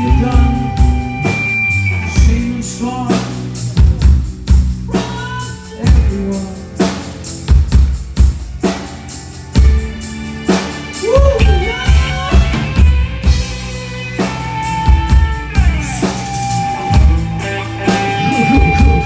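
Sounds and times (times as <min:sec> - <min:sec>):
rock band playing live: 0:00.0 - 0:19.0
lead guitar bending notes: 0:09.8 - 0:19.0
heavy bass drum hits: 0:18.1 - 0:19.0.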